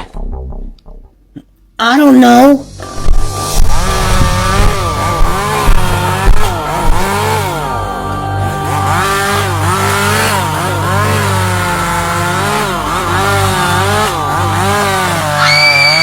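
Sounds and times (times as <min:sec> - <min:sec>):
high shrill held note: 0:02.6 - 0:16.0
chainsaw engine revving: 0:03.5 - 0:16.0.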